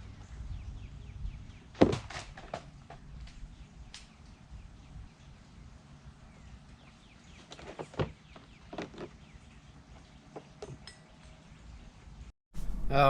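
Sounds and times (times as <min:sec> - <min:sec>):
low outdoor rumble: 0:11.9 - 0:13.0.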